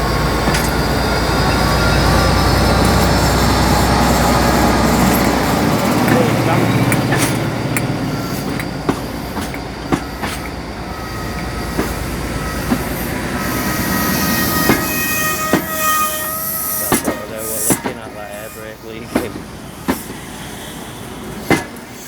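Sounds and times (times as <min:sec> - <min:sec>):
wheels clicking over rail joints: 0:00.0 - 0:10.6, 0:14.5 - 0:20.3
high whistling tones: 0:00.0 - 0:19.4
diesel locomotive running: 0:00.0 - 0:22.0.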